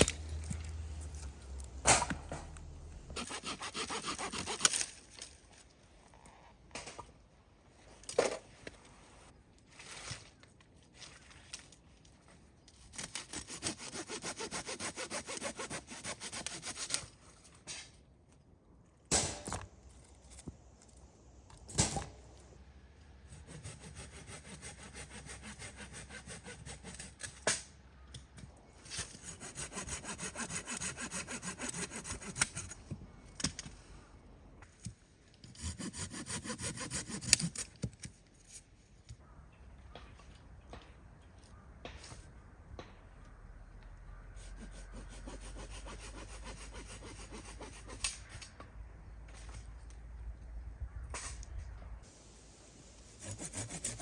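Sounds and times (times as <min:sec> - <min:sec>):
hand saw cutting wood: 0:03.2 - 0:04.9, 0:13.0 - 0:17.2, 0:23.3 - 0:27.7, 0:28.9 - 0:32.8, 0:35.5 - 0:37.7, 0:44.4 - 0:48.4, 0:53.1 - 0:54.0.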